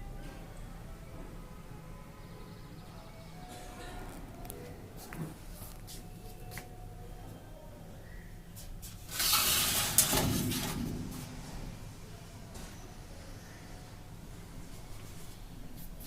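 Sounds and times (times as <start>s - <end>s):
loud rustling scrape: 8.8s - 11.7s.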